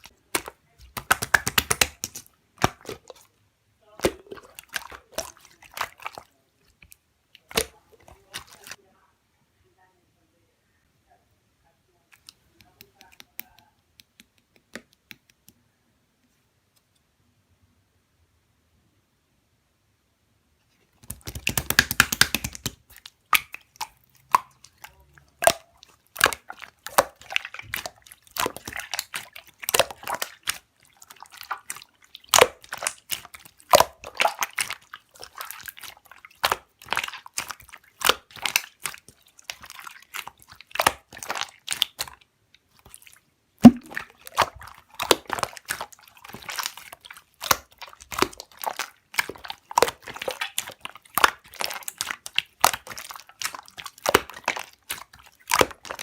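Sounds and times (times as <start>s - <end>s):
slime squelching and popping: 0.0s - 8.8s, 20.9s - 56.0s.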